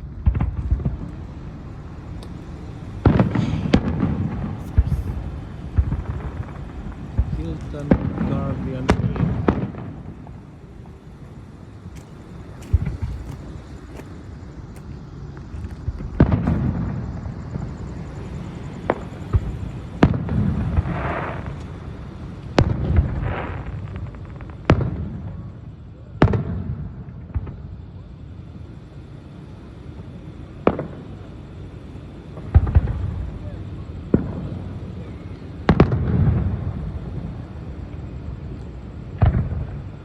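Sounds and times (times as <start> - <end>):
fireworks crackling: 0.0 - 25.4
fireworks booming with echo: 0.0 - 28.2, 30.0 - 40.0.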